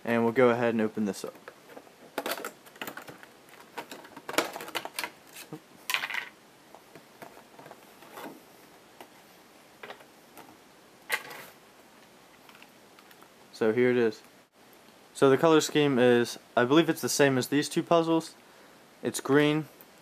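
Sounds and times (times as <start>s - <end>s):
packaging rustling: 1.4s - 9.2s.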